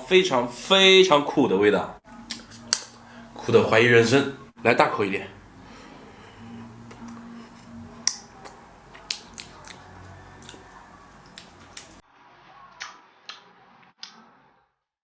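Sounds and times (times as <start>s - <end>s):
chewing sticky sugar clicks: 6.9s - 12.0s.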